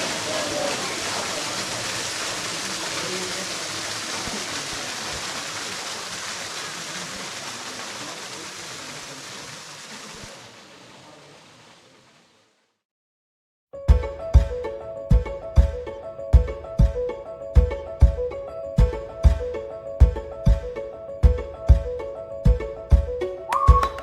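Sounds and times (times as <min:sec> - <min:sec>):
small waterfall splashing: 0:00.0 - 0:12.8, 0:23.5 - 0:24.0.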